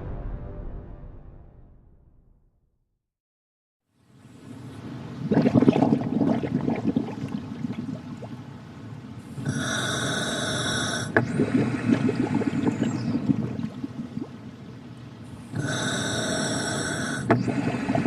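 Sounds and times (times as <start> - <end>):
bubbles gurgling underwater: 5.1 - 8.6, 9.2 - 14.8, 15.4 - 18.0
scuba regulator hiss: 9.3 - 11.2, 15.4 - 18.0.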